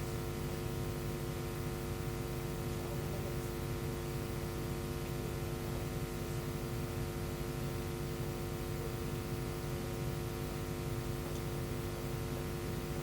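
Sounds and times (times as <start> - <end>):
electrical hum and hiss: 0.0 - 13.0.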